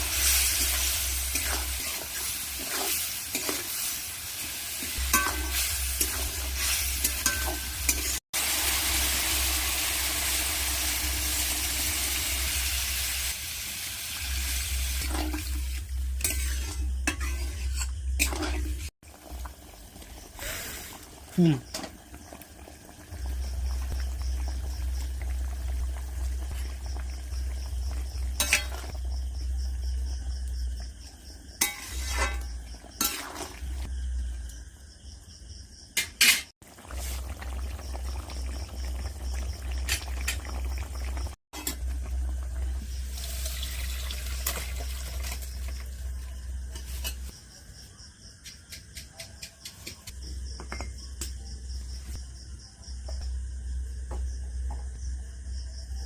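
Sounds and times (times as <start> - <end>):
metal spoon scraping pot: 16.1 - 18.9, 31.6 - 33.6
liquid pouring: 42.7 - 45.6.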